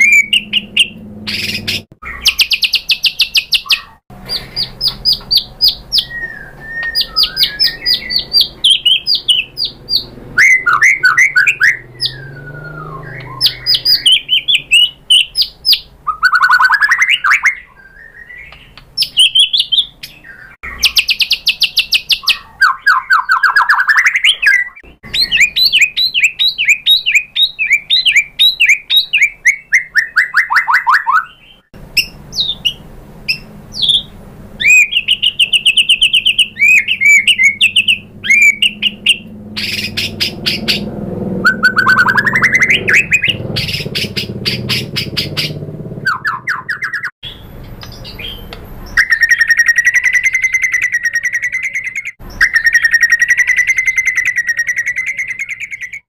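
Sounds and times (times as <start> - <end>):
songbird singing varied song: 0.0 - 56.0.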